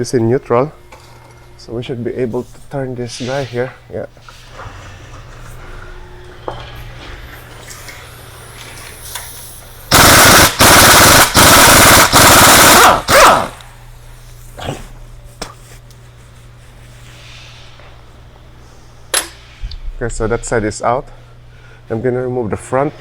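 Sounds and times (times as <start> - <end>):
impact wrench hammering: 9.9 - 13.6.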